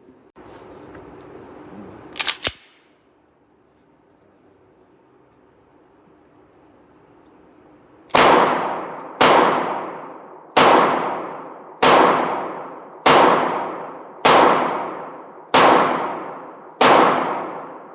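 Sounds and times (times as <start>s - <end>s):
pistol shots: 8.1s - 17.9s.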